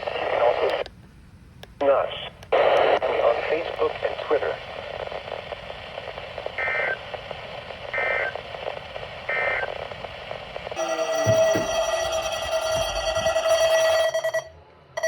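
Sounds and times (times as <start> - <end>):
radio hiss: 0.0 - 1.0, 1.6 - 10.8
loud multi-tone alert signal: 10.8 - 15.0.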